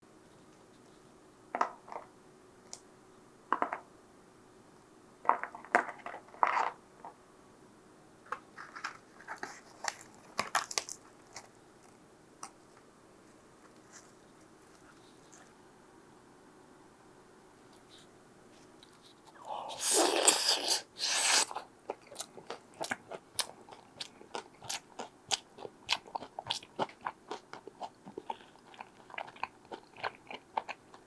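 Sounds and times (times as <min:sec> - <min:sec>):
crunching of pizza being chewed: 0:18.7 - 0:31.0.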